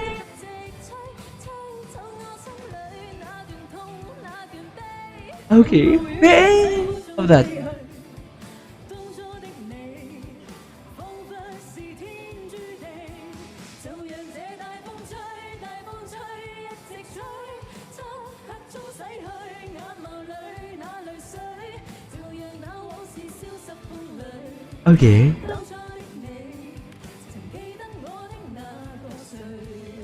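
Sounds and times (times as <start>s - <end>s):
band playing pop song: 0.0s - 0.4s, 5.4s - 8.6s, 24.9s - 26.2s
woman singing live: 0.0s - 7.9s, 9.0s - 10.4s, 11.0s - 24.7s, 25.3s - 30.0s.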